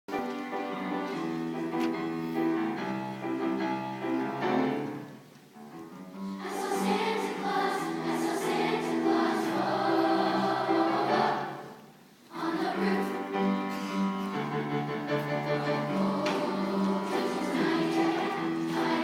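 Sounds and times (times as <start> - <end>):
children's choir singing: 6.1 - 19.0.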